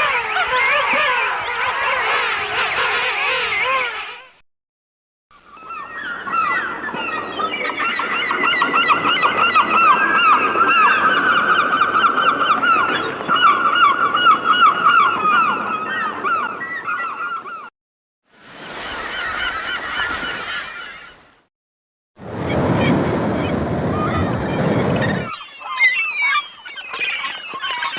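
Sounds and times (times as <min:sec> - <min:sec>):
flock of birds calling: 0:00.0 - 0:04.3, 0:05.5 - 0:17.7, 0:18.6 - 0:21.4, 0:24.0 - 0:27.9.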